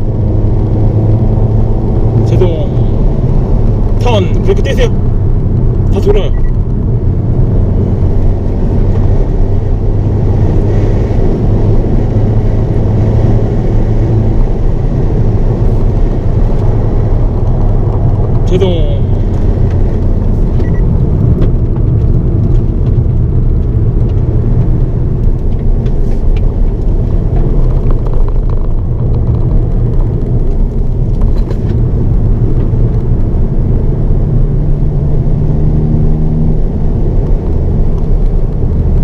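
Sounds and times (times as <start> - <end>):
car engine under load: 0.0 - 39.0
tyre and road rumble: 0.0 - 39.0.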